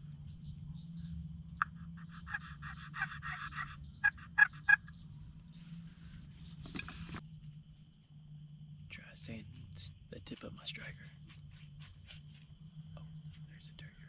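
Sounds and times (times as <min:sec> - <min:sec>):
turkey call clucks: 0:01.6 - 0:05.0
turkey pot call yelps: 0:01.6 - 0:05.0.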